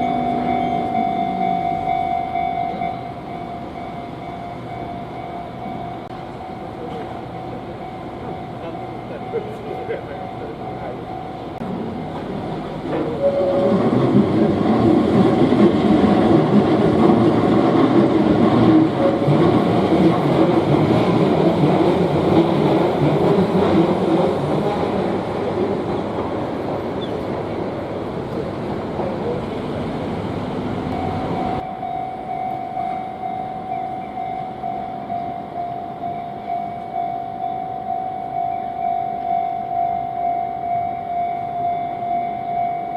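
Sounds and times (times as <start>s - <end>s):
level crossing alarm bell: 0.0s - 14.0s, 30.9s - 42.9s
train wheels rumbling on rails: 0.0s - 42.9s.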